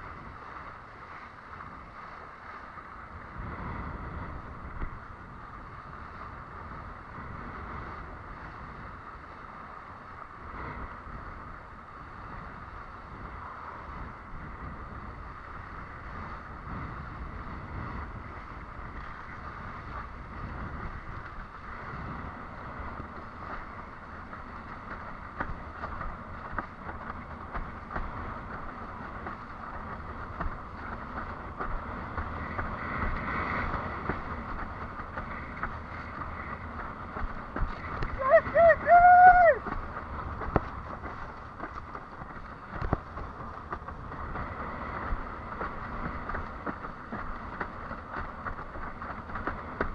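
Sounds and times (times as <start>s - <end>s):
water rushing under board: 0.0s - 49.9s
wind buffeting microphone: 0.0s - 49.9s
water slapping: 18.0s - 49.9s.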